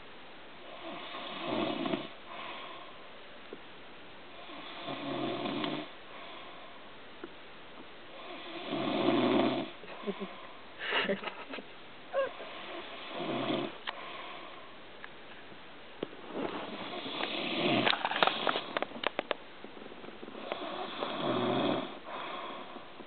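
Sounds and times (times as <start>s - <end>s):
person snoring: 12.2s - 14.5s, 16.7s - 18.7s, 20.4s - 22.8s.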